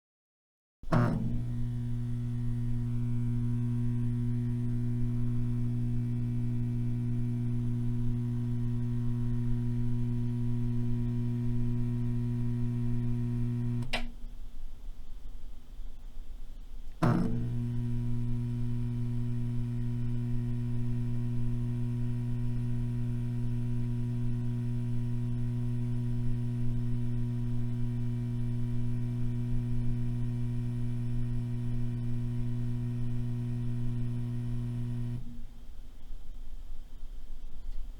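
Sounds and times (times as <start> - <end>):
fluorescent tube electrical hum: 0.9 - 15.2, 16.5 - 36.3.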